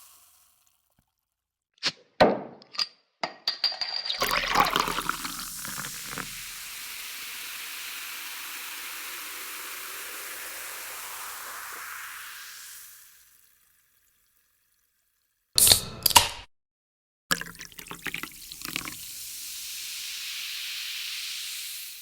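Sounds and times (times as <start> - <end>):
liquid pouring: 0.0 - 0.8, 3.7 - 14.2, 17.3 - 19.6.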